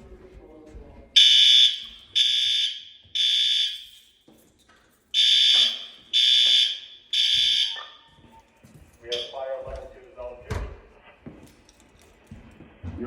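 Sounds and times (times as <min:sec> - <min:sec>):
fire alarm horn blasts: 0:01.2 - 0:04.2, 0:05.1 - 0:08.4, 0:09.1 - 0:09.6.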